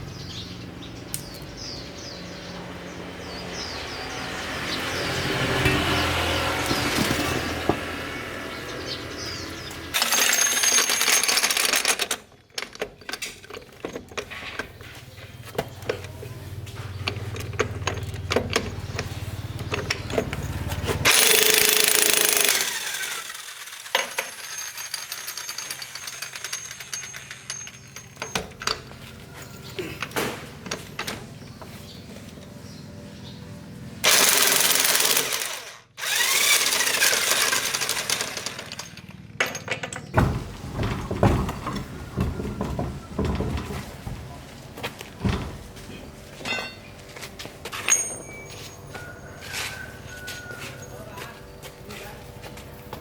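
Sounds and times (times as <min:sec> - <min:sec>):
tools clinking on metal: 0:09.9 - 0:14.8, 0:17.0 - 0:31.3, 0:36.9 - 0:40.2, 0:46.3 - 0:51.0
power tool running: 0:19.0 - 0:28.2, 0:34.0 - 0:39.3.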